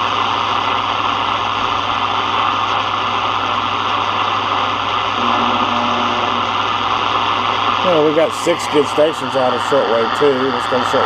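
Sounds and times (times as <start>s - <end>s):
low hum: 0.0s - 9.5s
radio static hiss: 0.0s - 11.0s
short low tone: 5.2s - 6.5s.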